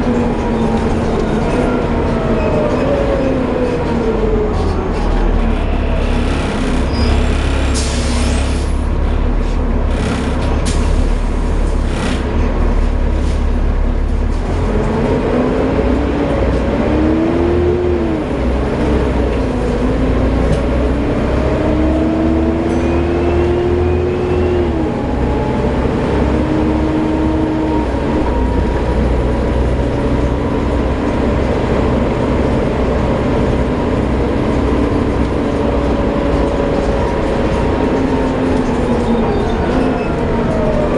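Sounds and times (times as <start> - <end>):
bus whine rising in pitch: 0.0 - 12.2, 13.9 - 40.9
bus diesel engine running: 0.0 - 40.9
short air hisses: 7.8 - 8.7.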